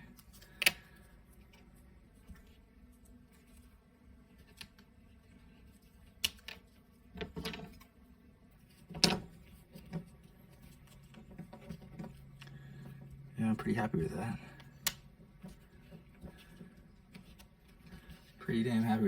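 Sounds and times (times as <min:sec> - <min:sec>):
small parts and tool clicking: 0:04.3 - 0:07.9, 0:08.7 - 0:13.1, 0:14.6 - 0:18.4.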